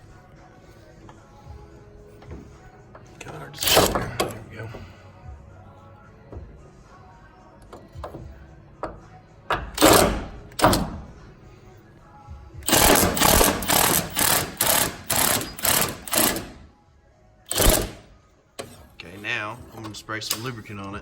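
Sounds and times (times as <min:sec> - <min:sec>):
impact wrench bursts: 0:03.6 - 0:04.3, 0:09.6 - 0:10.9, 0:12.6 - 0:16.6, 0:17.5 - 0:18.1.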